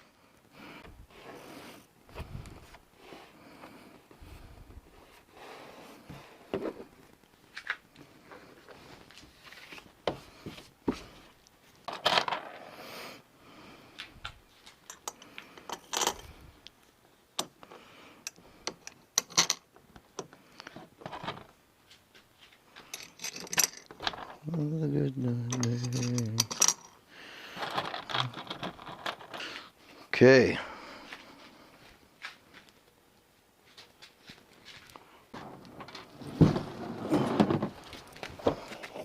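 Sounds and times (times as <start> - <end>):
hardware and tools clinking: 14.6 - 16.3, 18.2 - 20.4, 22.8 - 24.5, 25.3 - 29.5.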